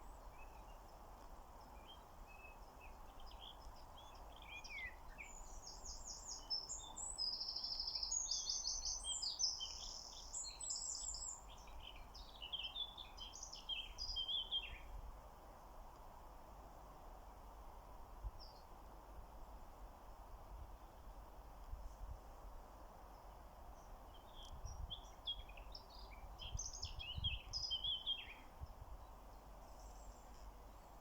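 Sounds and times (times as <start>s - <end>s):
songbirds singing: 0.0s - 15.0s, 23.1s - 31.0s
faint outdoor background: 0.0s - 31.0s.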